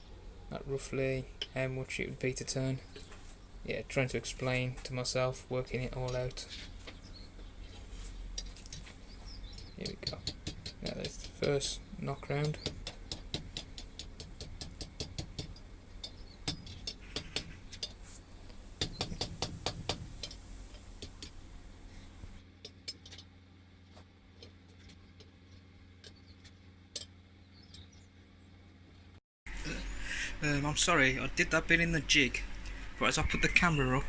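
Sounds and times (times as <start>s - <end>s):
hammer striking hot iron: 9.6s - 18.0s, 18.8s - 20.4s.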